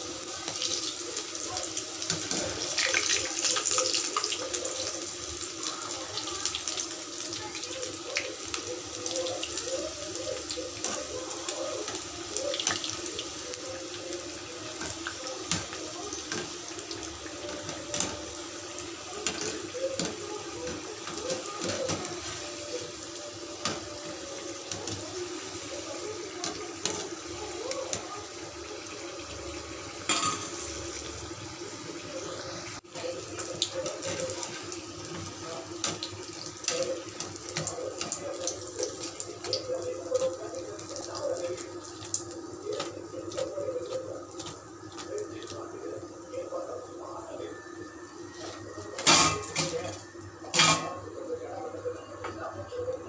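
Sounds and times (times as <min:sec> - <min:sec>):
food deep-frying in oil: 0:00.0 - 0:53.0.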